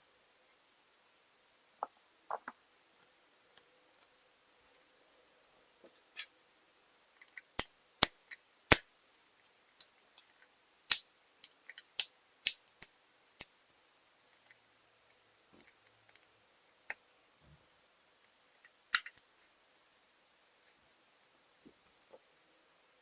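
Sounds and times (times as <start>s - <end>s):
clicks and taps of hard plastic: 1.8s - 2.6s.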